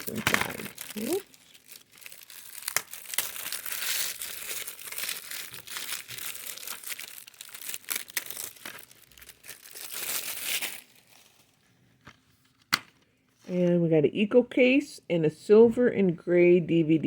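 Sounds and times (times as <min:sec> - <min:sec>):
plastic wrapping tearing and crinkling: 0:00.0 - 0:11.7.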